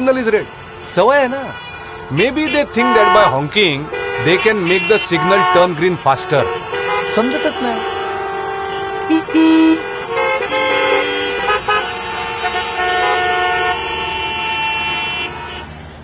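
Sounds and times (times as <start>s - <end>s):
vehicle horns honking: 0.0s - 15.8s.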